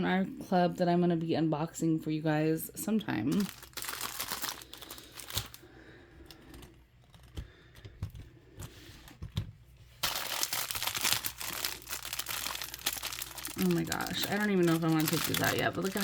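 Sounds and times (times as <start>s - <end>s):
plastic packaging crinkling: 3.1s - 5.7s, 9.9s - 16.0s.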